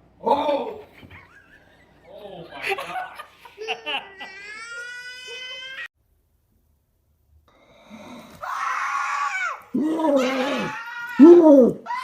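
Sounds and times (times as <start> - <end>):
loud scream: 8.4 - 12.0.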